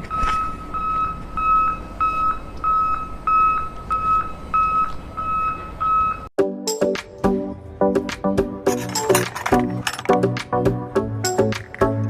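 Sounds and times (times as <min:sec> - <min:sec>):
reversing beeper beeping: 0:00.1 - 0:06.3.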